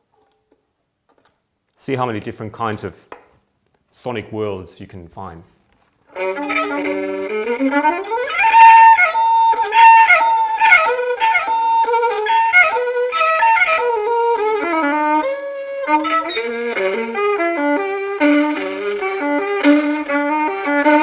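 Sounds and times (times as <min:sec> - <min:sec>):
prepared violin bowed: 0:05.2 - 0:21.0.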